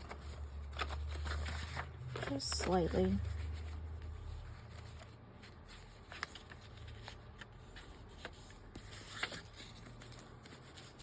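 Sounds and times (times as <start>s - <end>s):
paper rustling and crinkling: 0.0s - 11.0s.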